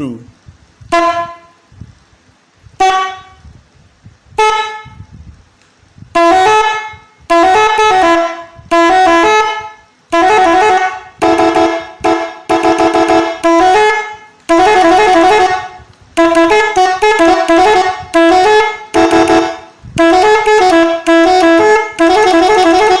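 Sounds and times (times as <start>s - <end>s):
musical bus horn blasts: 0.9s - 1.6s, 2.8s - 3.4s, 4.4s - 5.0s, 6.2s - 23.0s.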